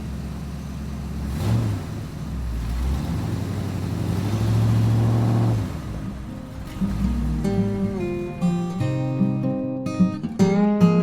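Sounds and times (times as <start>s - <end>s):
vehicle engine revving: 0.0s - 9.2s.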